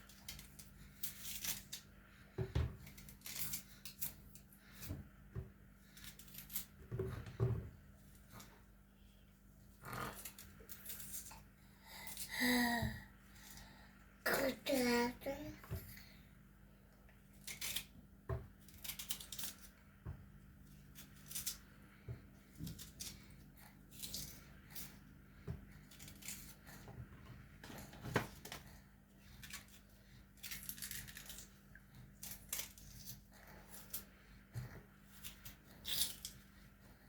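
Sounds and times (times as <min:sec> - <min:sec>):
faint steady hum: 0:00.0 - 0:37.0
knife scraping and cutting food: 0:02.8 - 0:04.9, 0:29.3 - 0:36.6.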